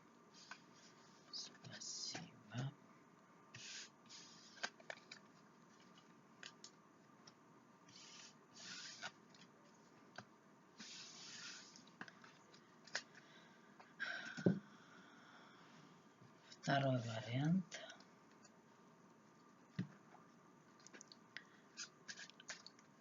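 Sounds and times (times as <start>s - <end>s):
cards sliding rustle: 0.3s - 1.4s, 3.5s - 6.7s, 7.9s - 9.5s, 10.8s - 13.2s, 21.8s - 22.7s.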